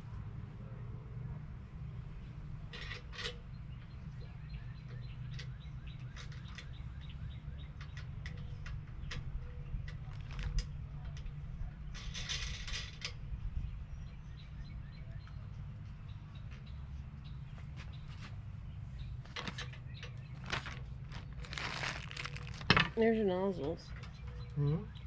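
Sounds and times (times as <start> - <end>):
light clicks and knocks of parts: 2.7 - 13.2, 19.1 - 24.6
rattling bursts: 19.2 - 23.7.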